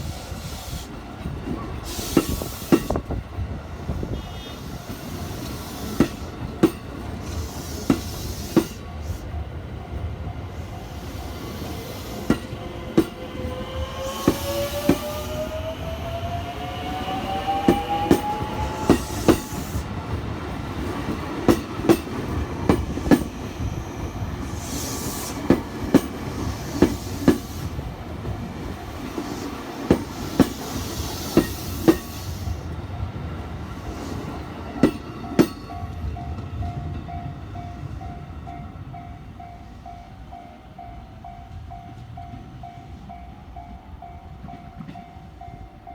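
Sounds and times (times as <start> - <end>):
train wheels clacking over rail joints: 17.3 - 23.8.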